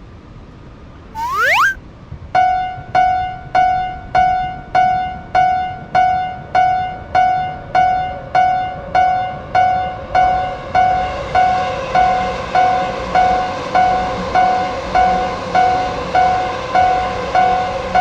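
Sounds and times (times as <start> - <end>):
rising whistle-like glide: 1.2 - 1.8.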